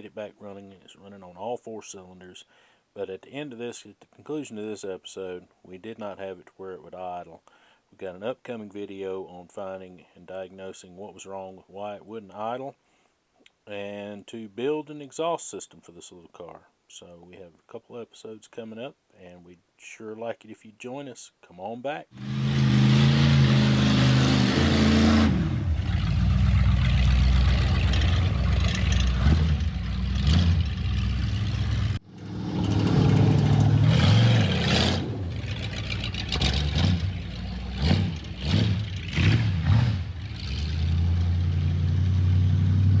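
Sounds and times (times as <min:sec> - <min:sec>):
car engine revving: 0:22.2 - 0:43.0.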